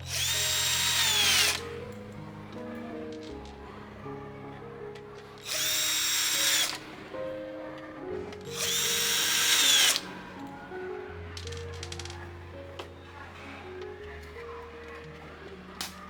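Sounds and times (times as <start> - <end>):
power tool motor whine: 0.0 - 1.9, 5.4 - 7.0, 8.5 - 10.1.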